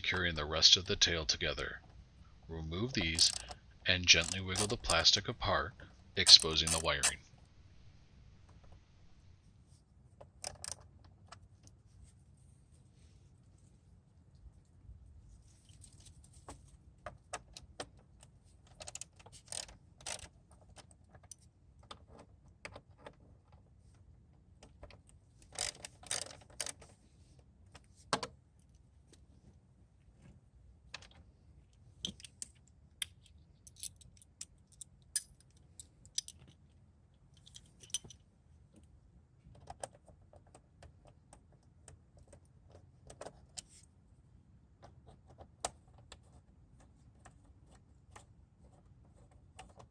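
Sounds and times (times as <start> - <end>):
plastic panels and screws clicking: 3.0 - 5.2, 6.2 - 7.2, 10.2 - 11.8, 15.6 - 27.0.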